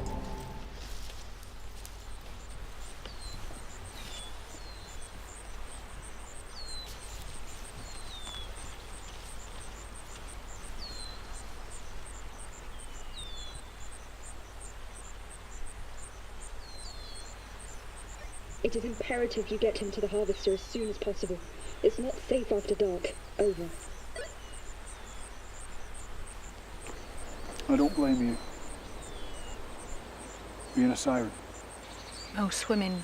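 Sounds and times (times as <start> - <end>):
low steady rumble: 0.0 - 1.0
insect chirping: 0.0 - 33.0.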